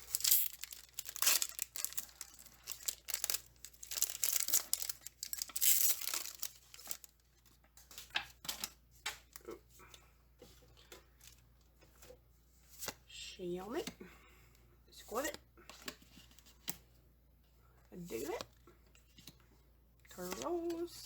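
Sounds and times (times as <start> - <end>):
foil wrapper tearing and crinkling: 0.0 - 7.1.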